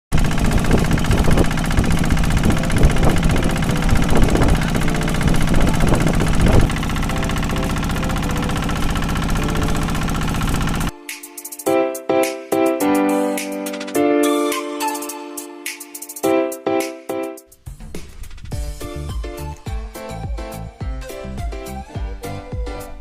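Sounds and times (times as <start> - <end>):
engine running: 0.1 - 10.9.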